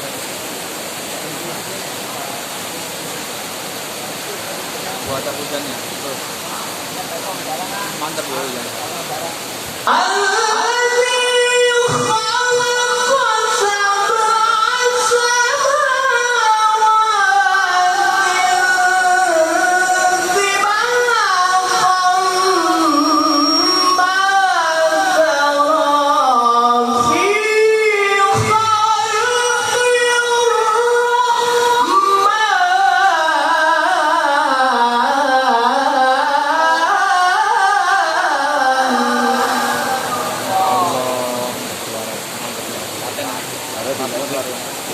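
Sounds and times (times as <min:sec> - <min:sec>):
person chanting melodically: 0:09.8 - 0:43.8.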